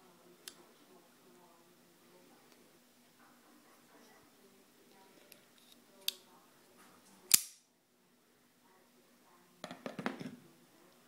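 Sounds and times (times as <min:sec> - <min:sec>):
knife snapping open: 0:07.3 - 0:07.6.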